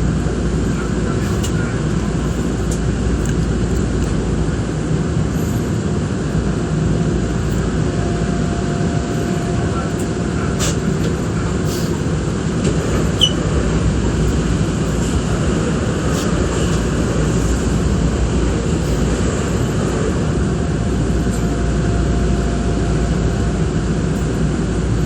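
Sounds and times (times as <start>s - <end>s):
train rumbling from inside: 0.0s - 25.0s
brief high squeak: 12.8s - 13.4s.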